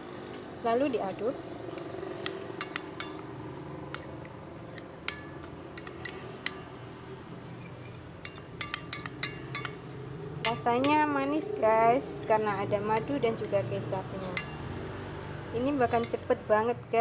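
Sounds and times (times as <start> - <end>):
spoon clinking against container: 1.7 - 3.2, 3.9 - 6.9, 7.5 - 14.8, 15.8 - 16.3.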